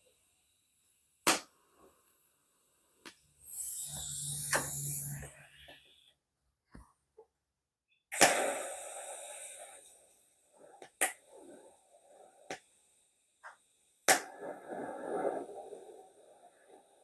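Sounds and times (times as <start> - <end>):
welding arc crackling and hissing: 3.1 - 6.1, 8.1 - 17.0.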